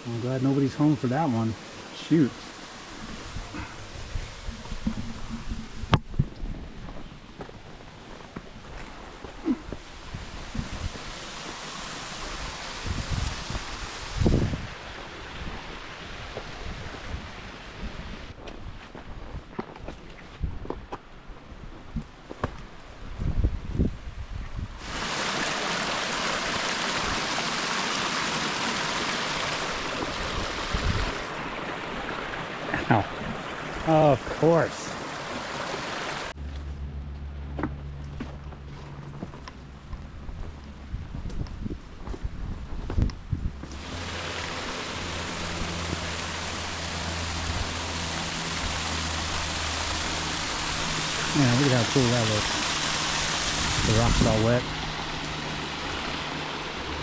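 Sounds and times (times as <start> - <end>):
small waterfall rushing: 0.0 - 5.5, 8.6 - 18.4, 24.8 - 36.4, 43.6 - 57.0.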